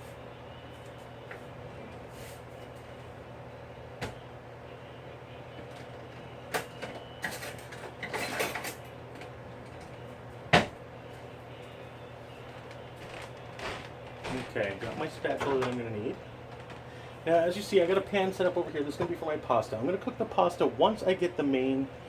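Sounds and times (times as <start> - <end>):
steady low hum: 0.0 - 22.0
utensils clattering in a drawer: 7.2 - 8.9.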